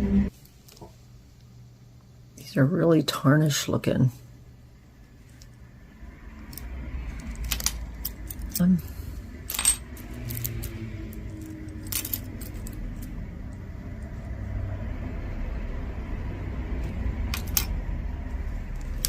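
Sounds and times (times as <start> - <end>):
steady low rumble: 4.3 - 19.0
jewelry clinking and jangling: 6.4 - 14.0, 17.3 - 17.8.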